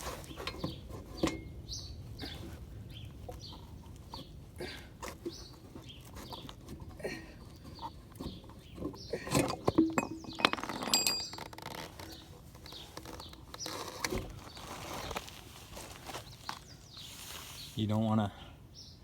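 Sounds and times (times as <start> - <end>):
metal parts clinking together: 9.3 - 11.6.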